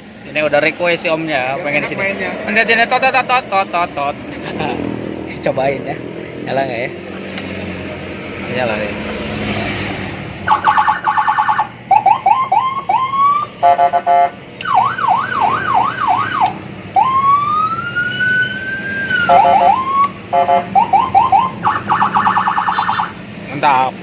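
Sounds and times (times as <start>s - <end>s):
police siren cycling patterns: 10.4s - 23.2s.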